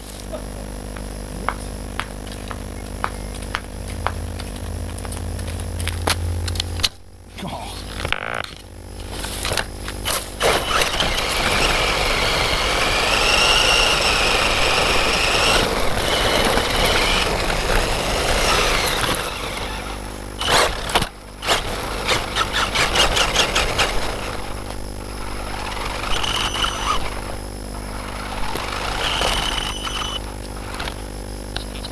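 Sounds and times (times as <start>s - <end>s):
rc truck electric motor whine: 8.0s - 31.9s.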